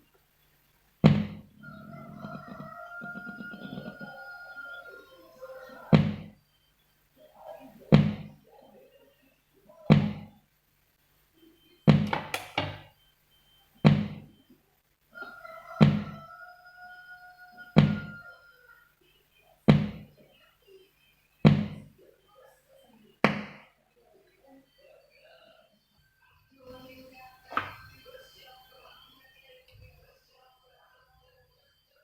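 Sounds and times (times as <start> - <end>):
speaker thump: 1.0 - 1.4.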